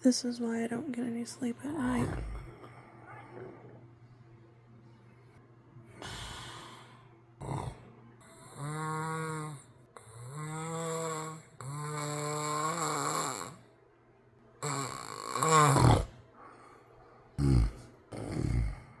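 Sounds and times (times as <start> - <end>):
man snoring loudly: 6.0 - 13.7, 14.6 - 16.2, 17.4 - 19.0.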